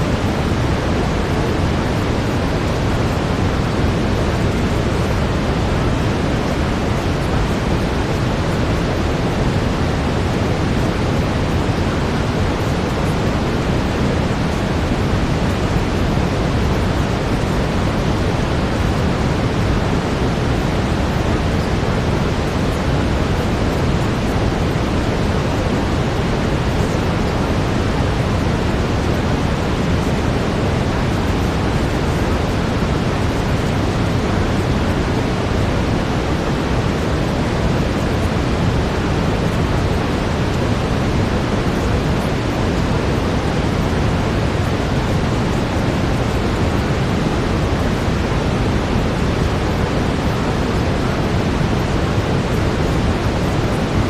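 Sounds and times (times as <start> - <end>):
brown noise deep hiss: 0.0 - 54.0.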